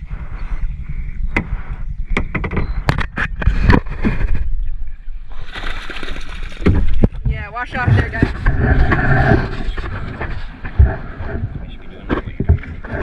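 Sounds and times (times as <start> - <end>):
paddle knocks and splashes: 5.3 - 13.0
steady low rumble: 6.9 - 13.0.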